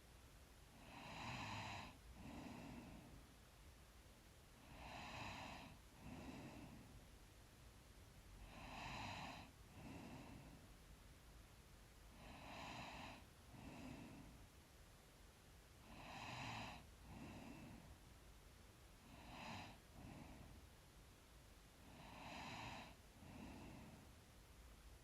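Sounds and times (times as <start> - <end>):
person breathing in sleep: 0.7 - 3.3, 4.6 - 7.1, 8.4 - 10.8, 12.1 - 14.5, 15.8 - 18.0, 19.0 - 20.7, 21.8 - 24.2.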